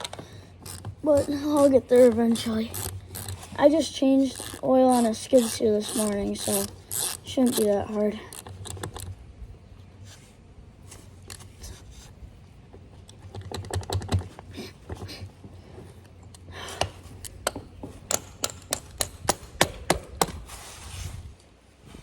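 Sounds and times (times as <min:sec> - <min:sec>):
wrench clicking on bolts: 0:00.0 - 0:03.6, 0:04.3 - 0:09.1, 0:16.3 - 0:20.4
low steady hum: 0:00.0 - 0:22.0.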